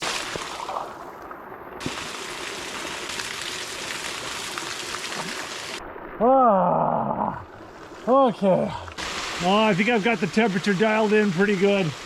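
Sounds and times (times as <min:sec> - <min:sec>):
water running into a pool: 0:00.0 - 0:12.0.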